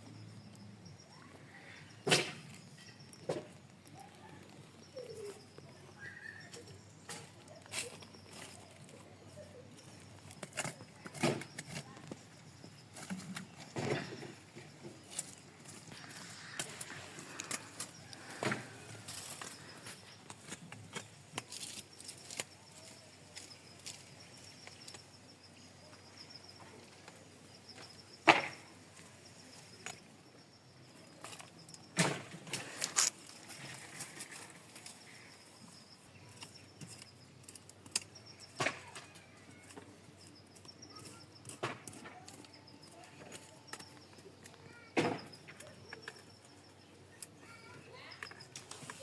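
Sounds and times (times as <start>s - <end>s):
sharp wooden knocks and cracks: 28.2s - 28.6s.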